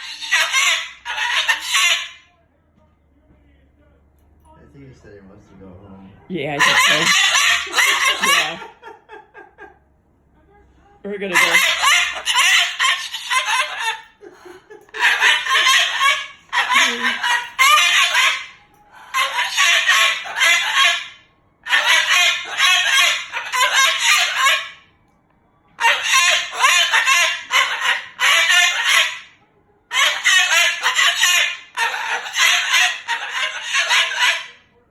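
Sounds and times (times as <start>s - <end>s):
cockatoo harsh calls: 0.0s - 2.3s, 6.5s - 9.5s, 11.2s - 24.9s, 25.8s - 34.7s.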